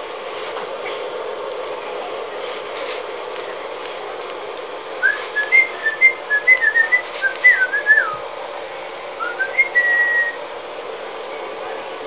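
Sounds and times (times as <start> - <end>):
person whistling: 5.0 - 8.2, 9.2 - 10.4.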